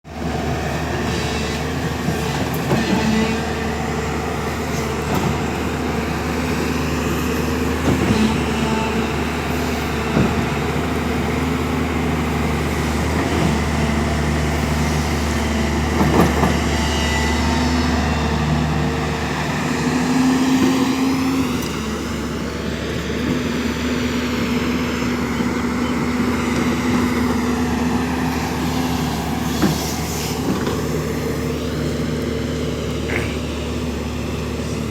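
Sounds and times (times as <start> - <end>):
diesel engine running: 0.1 - 34.9
knocks and clanks: 10.1 - 10.7, 15.9 - 16.7, 29.4 - 30.9.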